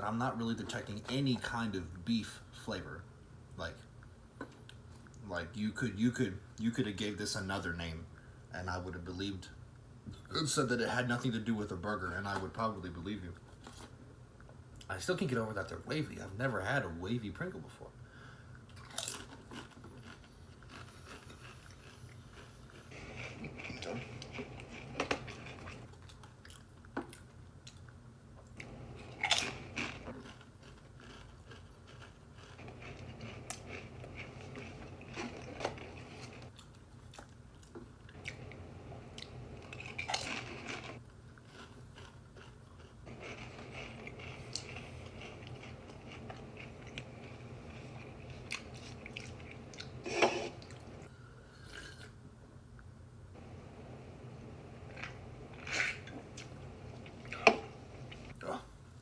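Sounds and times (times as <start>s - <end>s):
faint low hum: 0.0s - 59.0s
crisps being chewed: 18.6s - 51.1s.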